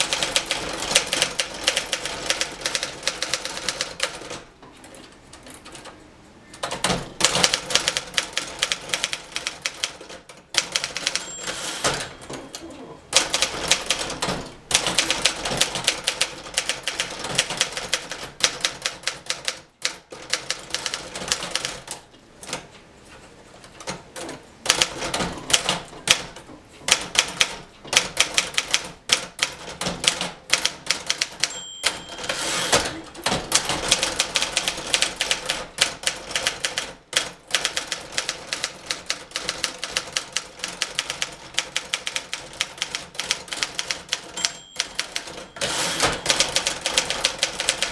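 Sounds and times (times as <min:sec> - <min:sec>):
typewriter keys clacking: 0:06.6 - 0:22.6, 0:23.7 - 0:47.9
typewriter carriage return sweep: 0:10.6 - 0:12.4, 0:29.8 - 0:36.4, 0:43.3 - 0:47.9
typewriter margin bell ringing: 0:10.9 - 0:12.4, 0:31.3 - 0:33.0, 0:43.9 - 0:47.9.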